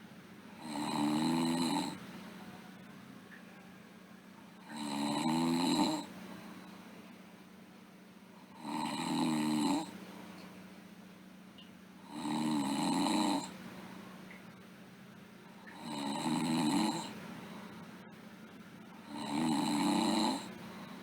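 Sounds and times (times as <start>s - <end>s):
girl snoring: 0.6s - 2.0s, 4.6s - 6.1s, 8.5s - 9.9s, 12.0s - 13.6s, 15.7s - 17.2s, 19.0s - 20.6s.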